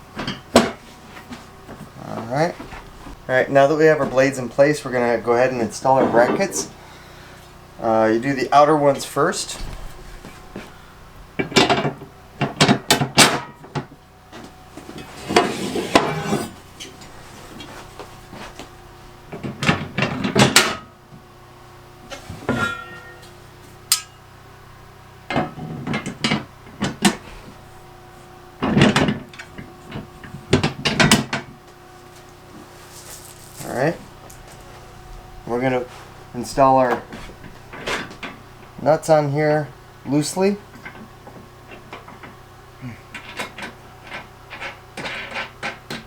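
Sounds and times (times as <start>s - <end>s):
metal brackets knocking and clinking: 22.5s - 24.2s.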